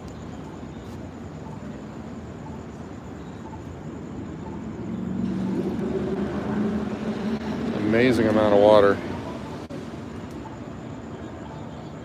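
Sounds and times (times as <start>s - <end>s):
vehicle engine: 4.2s - 11.0s
water rushing: 5.3s - 9.7s.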